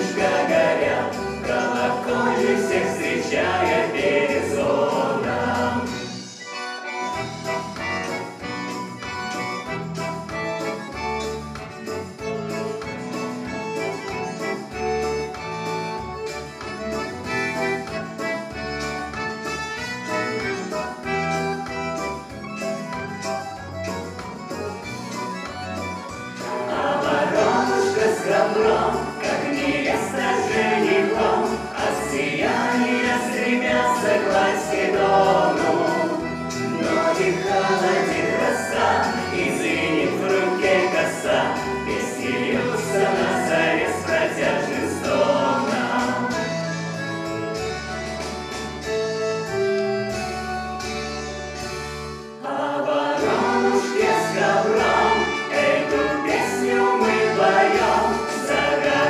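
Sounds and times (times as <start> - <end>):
group singing: 0.0 - 6.2, 26.4 - 46.6, 52.4 - 59.0
instrumental accompaniment: 0.0 - 59.0.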